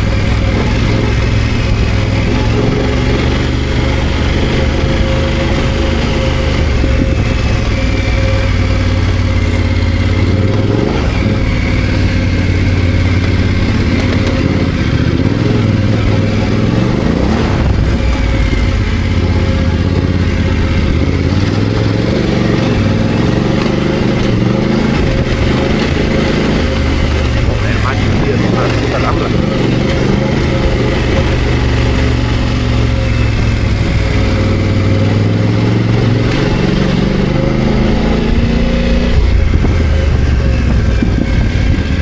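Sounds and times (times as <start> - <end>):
motorcycle engine revving: 0.0 - 42.0.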